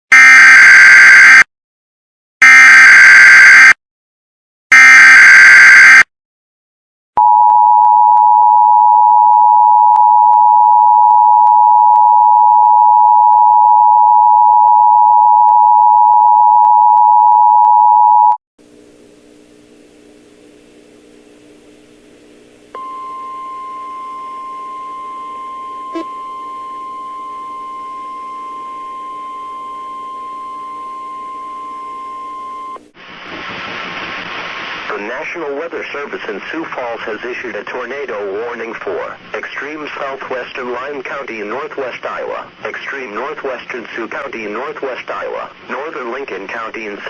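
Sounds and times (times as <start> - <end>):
high steady tone: 22.7 - 32.8
two-tone attention signal: 22.8 - 32.8.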